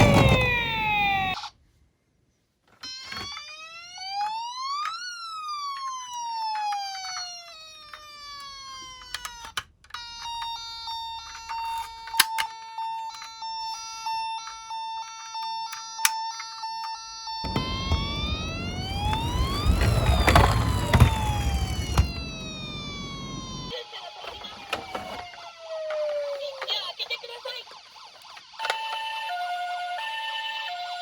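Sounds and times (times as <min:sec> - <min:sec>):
electronic siren wailing: 0:00.0 - 0:01.4, 0:17.5 - 0:23.7.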